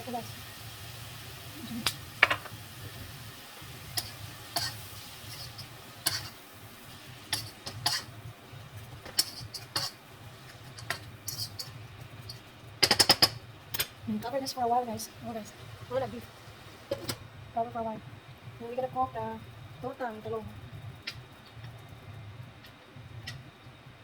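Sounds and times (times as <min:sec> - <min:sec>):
utensil scraping a pan: 0:04.0 - 0:06.4, 0:09.0 - 0:11.8.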